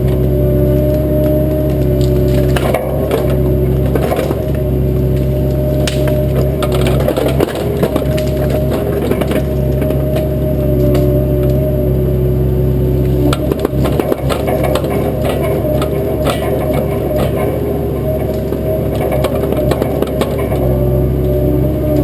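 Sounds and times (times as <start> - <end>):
brush and small trees cracking: 0.0 - 11.8
excavator diesel engine running: 0.0 - 22.0.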